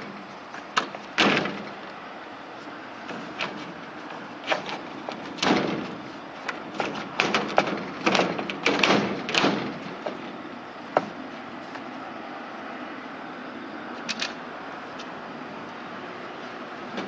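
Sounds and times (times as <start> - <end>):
sharp knocks and clicks: 0.0 - 1.9, 3.1 - 11.2
roof panel scraping: 0.0 - 12.0, 16.4 - 17.0.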